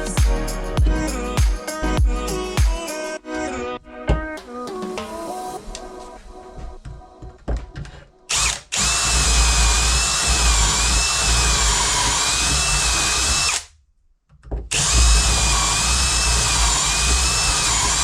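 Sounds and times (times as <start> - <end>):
power drill whining: 8.3 - 13.7, 14.7 - 18.0.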